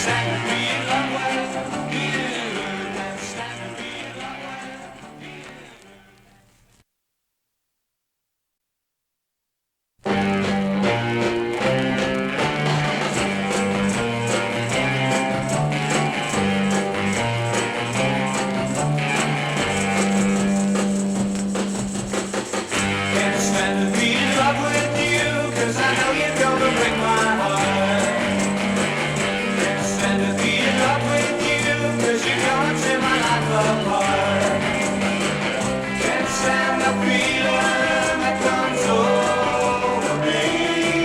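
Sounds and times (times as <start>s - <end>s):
rock and roll music: 0.0s - 6.2s, 10.0s - 41.0s
guitar: 0.0s - 6.8s, 10.0s - 41.0s
bass line: 10.0s - 22.2s, 22.8s - 41.0s.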